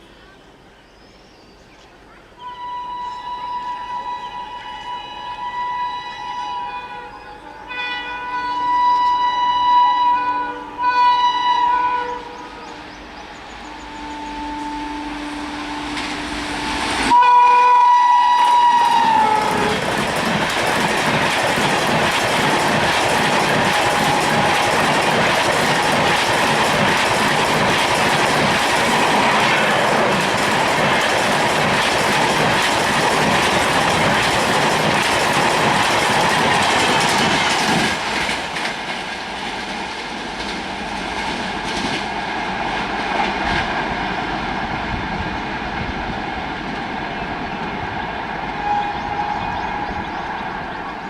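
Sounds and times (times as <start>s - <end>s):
train rushing past: 10.8s - 51.0s
wheels clattering over rail joints: 18.6s - 42.1s.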